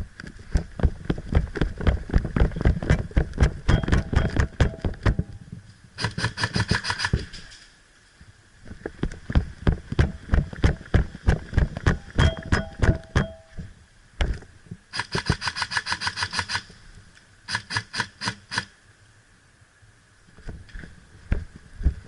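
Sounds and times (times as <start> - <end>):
sharp snaps and knocks: 0.2 - 5.4
airsoft rifles firing bursts: 6.0 - 7.5, 14.9 - 16.7, 17.5 - 18.7.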